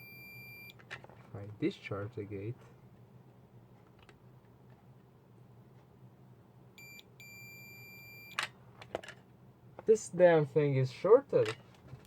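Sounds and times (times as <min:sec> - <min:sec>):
multimeter continuity beeps: 0:00.0 - 0:00.8, 0:06.8 - 0:08.4.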